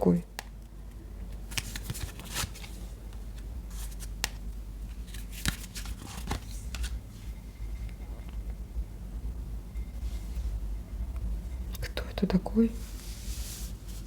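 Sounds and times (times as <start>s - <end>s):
cards being shuffled: 0.4s - 7.0s.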